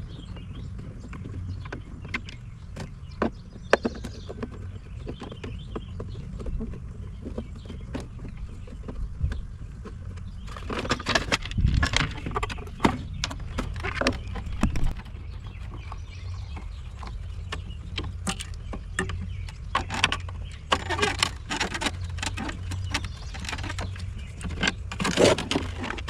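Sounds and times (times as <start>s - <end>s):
parts and tools clattering: 10.4s - 26.0s.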